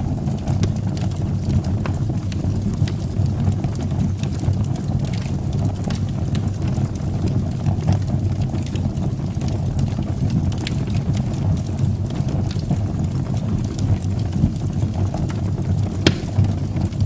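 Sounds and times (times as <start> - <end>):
fire crackling and popping: 0.0 - 17.0
fire roaring: 11.8 - 17.0.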